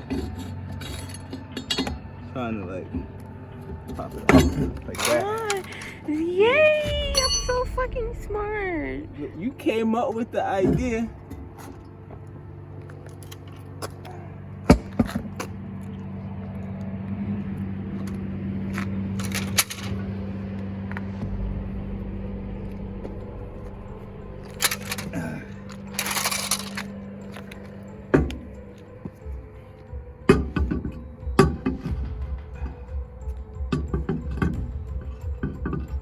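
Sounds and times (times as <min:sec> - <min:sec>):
metal clinks and knocks: 0:00.0 - 0:02.2, 0:02.9 - 0:06.0, 0:07.0 - 0:08.2, 0:18.0 - 0:20.1, 0:22.7 - 0:36.0
low engine hum: 0:00.0 - 0:36.0.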